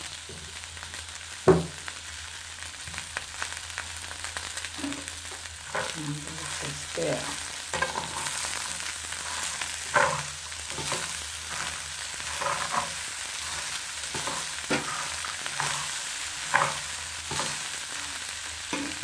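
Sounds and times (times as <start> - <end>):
food sizzling in hot oil: 0.0 - 19.0
utensil scraping a pan: 5.7 - 19.0.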